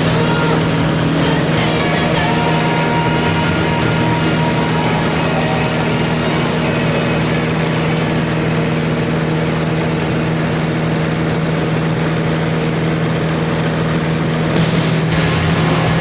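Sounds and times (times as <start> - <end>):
light aircraft engine droning: 0.0 - 16.0.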